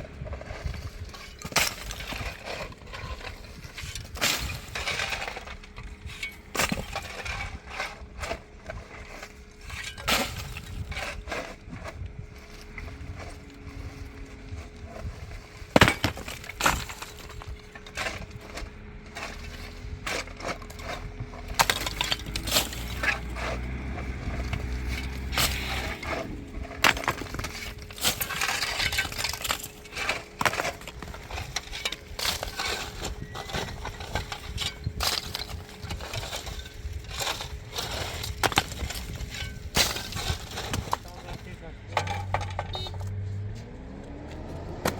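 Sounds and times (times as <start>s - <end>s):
building rubble smashed and shifted: 0.0s - 42.9s
engine droning: 10.7s - 39.7s, 40.3s - 44.9s.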